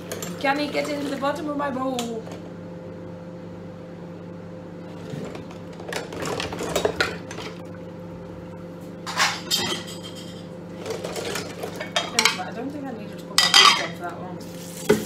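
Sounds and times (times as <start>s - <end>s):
steady low hum: 0.0s - 15.0s
dishes and cutlery clattering: 9.1s - 12.5s, 13.4s - 14.0s.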